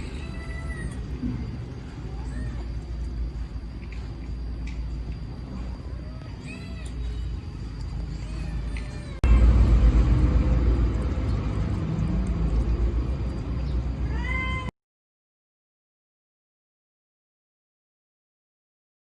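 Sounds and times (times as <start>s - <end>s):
loud low rumbling noise: 6.9s - 14.7s
kitten meowing: 14.0s - 14.7s.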